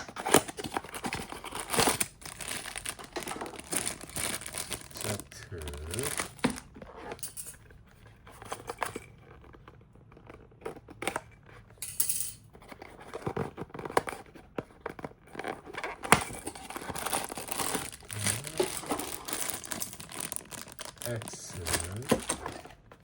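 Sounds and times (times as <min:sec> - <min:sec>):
wrapping tearing and crinkling: 0:00.0 - 0:06.8, 0:13.0 - 0:23.0
packaging clicks and taps: 0:12.8 - 0:22.8.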